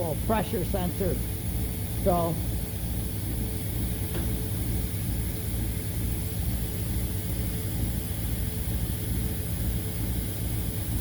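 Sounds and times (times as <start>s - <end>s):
faint hum and hiss: 0.0s - 11.0s
low rumbling background noise: 0.0s - 11.0s.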